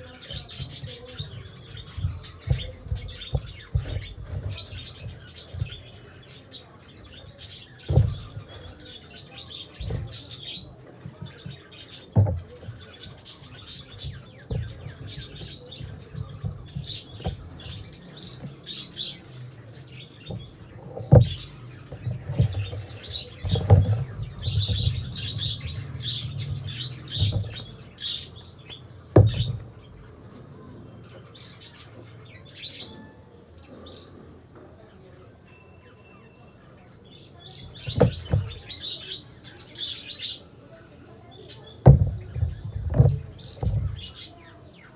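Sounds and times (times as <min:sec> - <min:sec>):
small birds chirping: 0:00.0 - 0:44.9
knocks and thuds: 0:00.3 - 0:06.0, 0:07.9 - 0:08.6, 0:09.8 - 0:13.1, 0:13.8 - 0:18.9, 0:20.2 - 0:28.0, 0:29.1 - 0:30.0, 0:37.8 - 0:38.6, 0:41.8 - 0:44.2.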